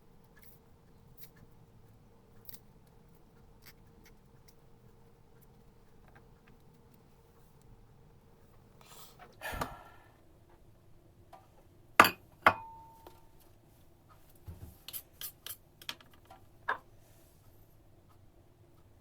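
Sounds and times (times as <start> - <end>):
small clicks and taps: 5.4 - 7.7.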